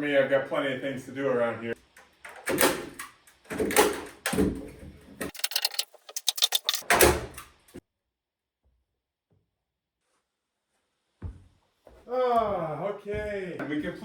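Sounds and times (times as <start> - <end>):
knocking and scraping handling noises: 5.3 - 6.8
quick run of clicks: 5.3 - 6.9.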